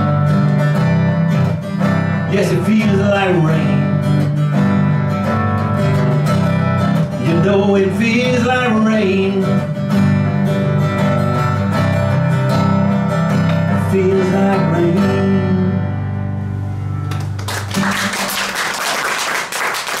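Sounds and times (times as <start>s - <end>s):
acoustic guitar playing: 0.0s - 18.6s
audience applause: 17.1s - 20.0s.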